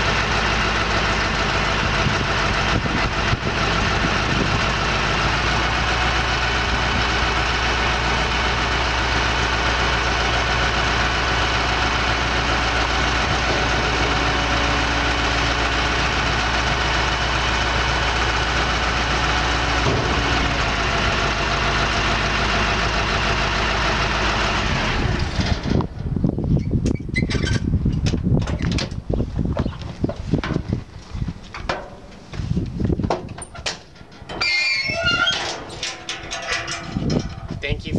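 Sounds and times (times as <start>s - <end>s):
diesel truck engine running: 0.0s - 37.9s
knocks: 19.7s - 21.7s.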